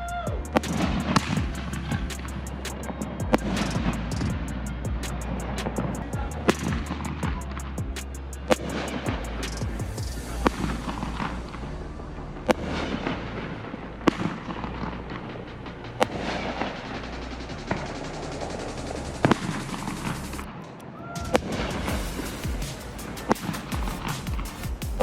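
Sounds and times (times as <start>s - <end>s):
fireworks crackling: 0.0s - 25.0s
music: 0.0s - 25.0s
fireworks bangs: 10.1s - 25.0s.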